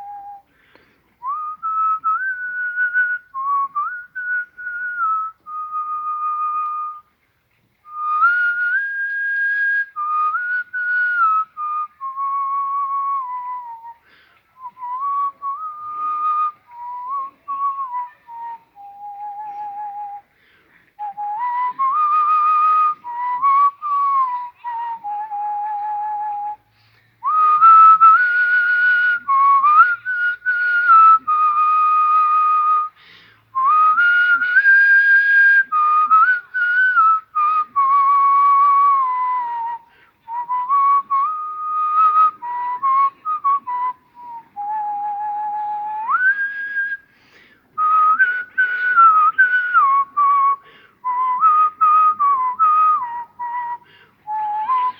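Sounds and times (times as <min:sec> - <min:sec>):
man whistling a melody: 0:00.0 - 0:07.1, 0:07.8 - 0:20.3, 0:20.9 - 0:54.9
short breaths: 0:00.4 - 0:01.2, 0:14.0 - 0:14.6, 0:20.2 - 0:21.0, 0:26.6 - 0:27.3, 0:32.9 - 0:33.6, 0:39.8 - 0:40.3, 0:47.0 - 0:47.8, 0:50.6 - 0:51.1, 0:53.8 - 0:54.3.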